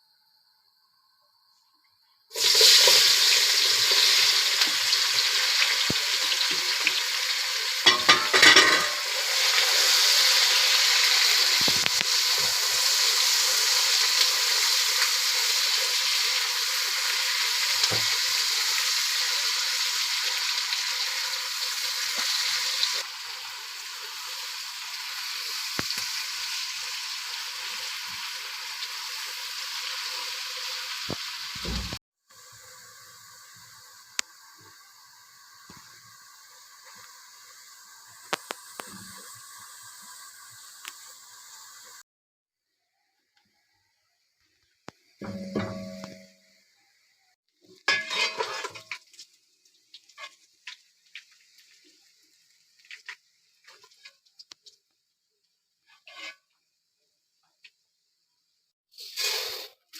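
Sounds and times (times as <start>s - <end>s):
food frying in oil: 2.3s - 42.0s, 42.7s - 59.9s
stirring scrapes: 55.9s - 56.4s.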